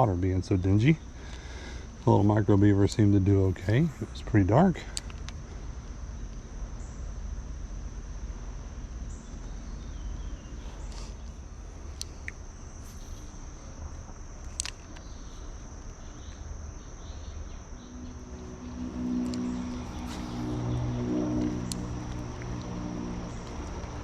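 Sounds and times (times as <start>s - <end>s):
high-pitched insect drone: 0.0s - 24.0s
low rumble: 17.5s - 24.0s.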